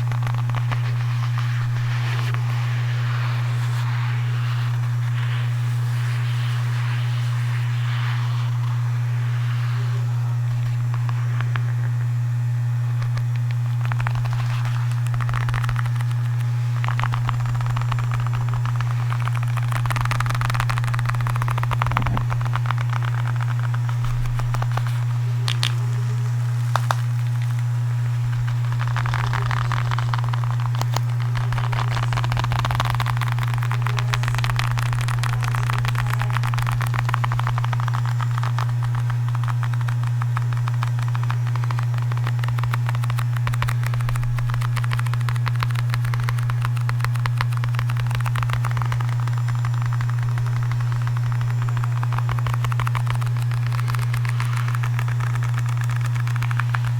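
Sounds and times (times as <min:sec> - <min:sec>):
light rapid tapping and crackling: 0:00.0 - 0:56.9
low background hum: 0:00.0 - 0:56.9.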